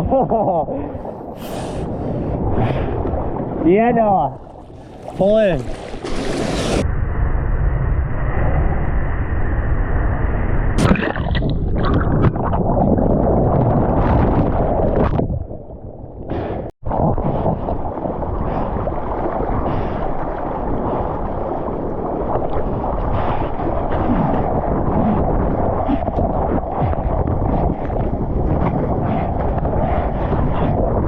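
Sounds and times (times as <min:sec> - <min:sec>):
ocean surf rushing: 0:01.1 - 0:06.8.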